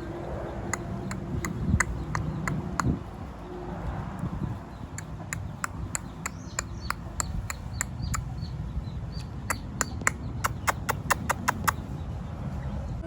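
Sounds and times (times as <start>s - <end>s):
sharp clicks or taps: 0.7s - 3.0s, 5.0s - 8.3s, 9.2s - 11.8s.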